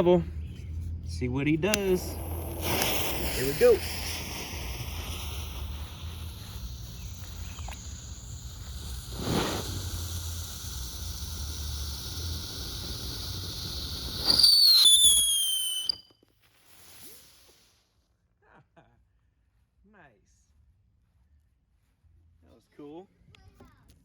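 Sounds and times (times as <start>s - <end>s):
firework whistling: 1.2s - 17.8s
firework fountain hissing: 1.3s - 17.8s.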